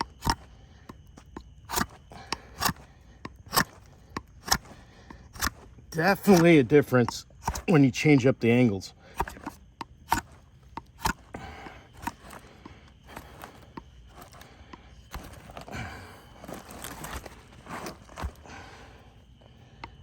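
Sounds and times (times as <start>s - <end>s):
drawknife scraping wood: 1.3s - 7.9s, 9.0s - 11.3s.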